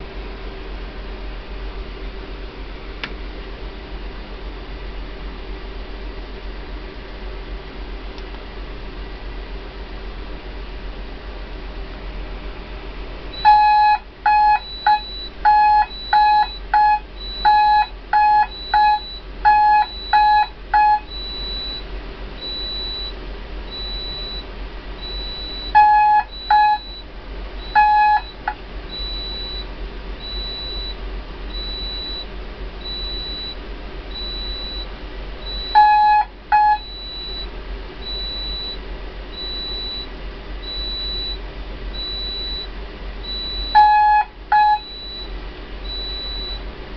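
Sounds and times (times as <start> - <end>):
machinery hum: 0.0 - 46.9
alarm buzzer beeping in pairs: 13.4 - 21.8, 22.4 - 24.4, 25.0 - 27.0, 27.6 - 41.4, 42.0 - 46.6.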